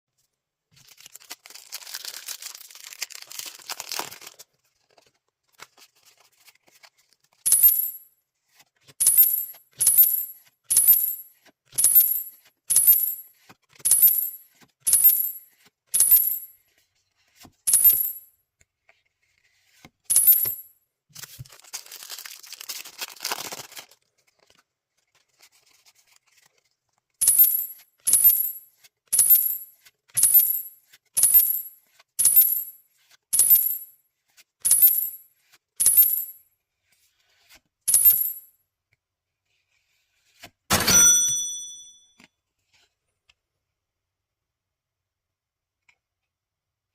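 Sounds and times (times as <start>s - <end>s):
foil wrapper crinkling and tearing: 0.8s - 7.1s, 21.4s - 24.5s
short bright clinking hits: 40.7s - 42.1s.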